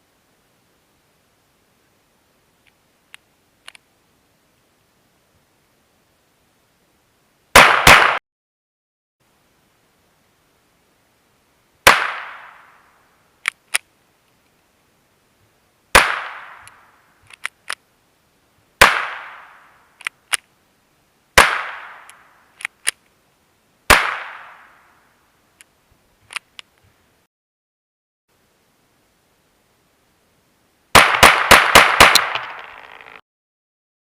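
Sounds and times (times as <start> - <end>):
pistol shots with echo: 7.6 - 8.2, 11.9 - 12.7, 16.0 - 16.7, 18.8 - 19.6, 21.4 - 22.1, 23.9 - 24.8, 31.0 - 32.7.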